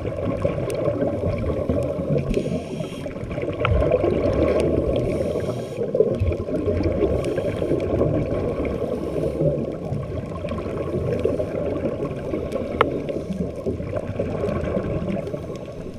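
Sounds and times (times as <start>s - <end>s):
muffled underwater rushing: 0.0s - 15.9s
sharp underwater clicks: 12.4s - 15.9s.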